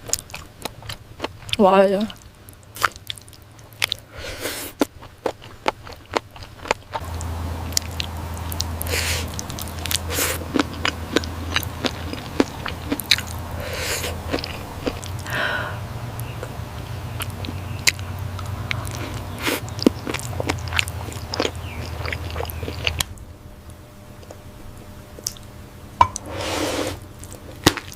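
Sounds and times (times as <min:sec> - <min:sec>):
close chewing and biting: 0:00.0 - 0:15.5, 0:16.1 - 0:23.2, 0:27.0 - 0:27.9
low steady hum: 0:00.0 - 0:27.9
short slurping hisses: 0:26.2 - 0:27.0.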